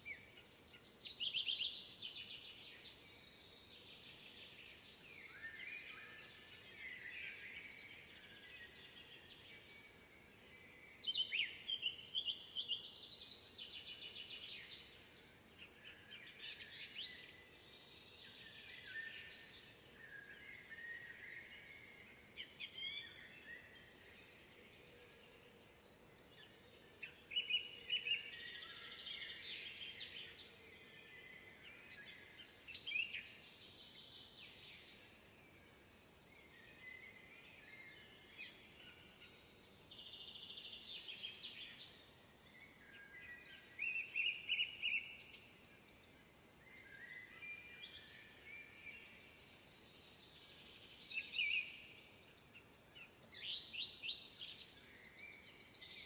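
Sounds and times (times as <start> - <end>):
faint steady background hiss: 0.0 - 56.0
songbirds chirping and trilling: 0.0 - 56.0.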